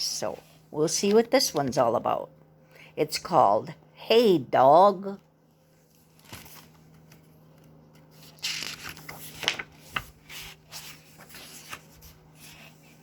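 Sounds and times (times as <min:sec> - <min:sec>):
book pages rustling: 0:05.7 - 0:13.0.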